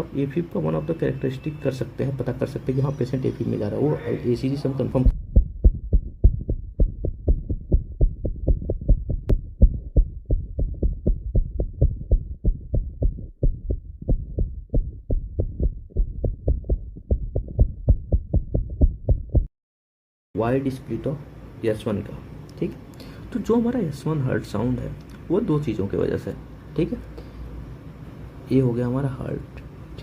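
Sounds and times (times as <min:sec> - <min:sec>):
irregular heartbeat thuds: 0:05.0 - 0:19.5.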